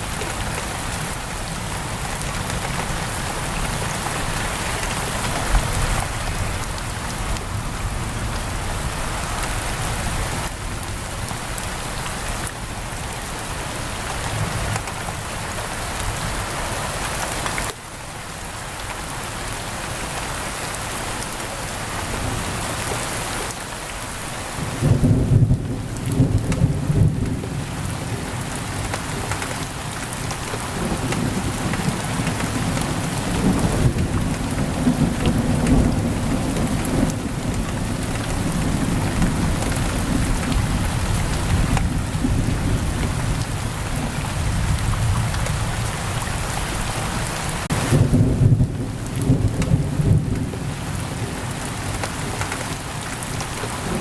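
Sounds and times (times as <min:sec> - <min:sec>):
heavy rain on a window: 0:00.0 - 0:54.0
thunder rumbling: 0:47.7 - 0:52.0.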